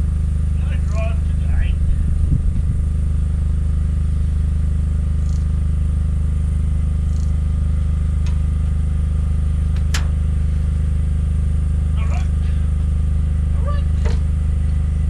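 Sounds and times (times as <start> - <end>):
diesel engine running: 0.0 - 15.0
sharp click: 5.2 - 5.5, 7.1 - 7.4.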